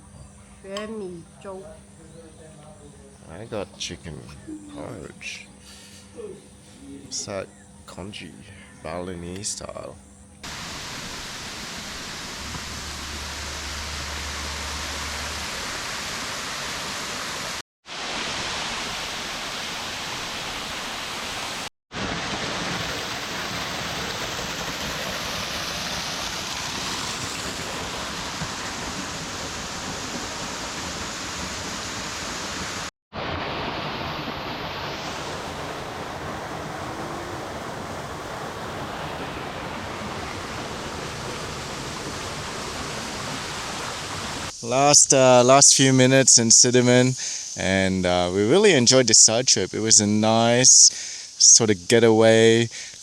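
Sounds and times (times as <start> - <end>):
water rushing: 10.4 - 47.1.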